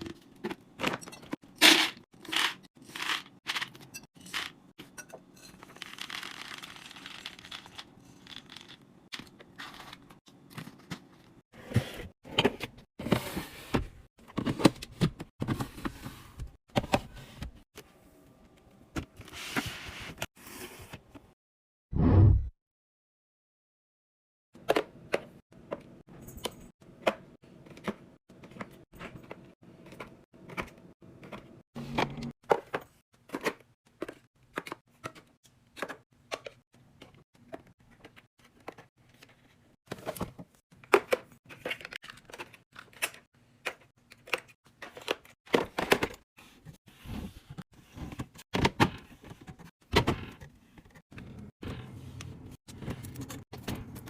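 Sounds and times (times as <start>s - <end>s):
items clicking and knocking: 0.0s - 11.4s, 24.6s - 46.2s.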